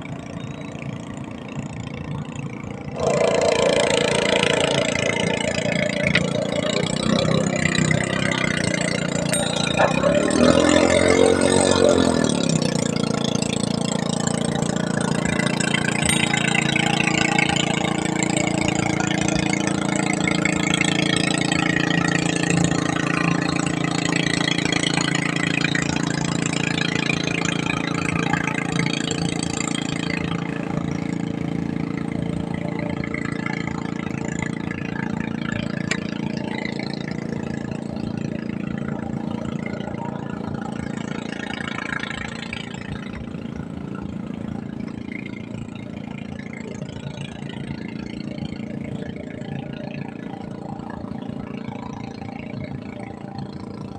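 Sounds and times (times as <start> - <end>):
engine idling: 0.0 - 53.9.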